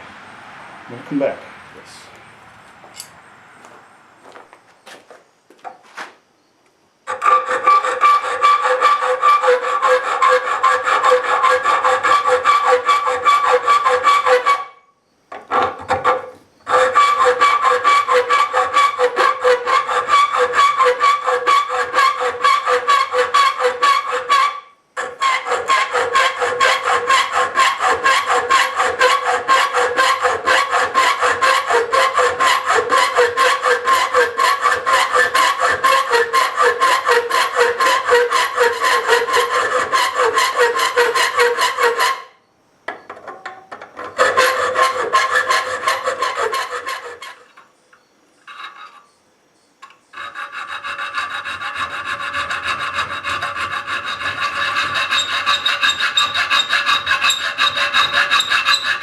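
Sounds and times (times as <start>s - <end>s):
hand file rasping on metal: 7.1s - 14.7s, 15.5s - 42.3s, 44.0s - 47.6s, 50.1s - 59.0s.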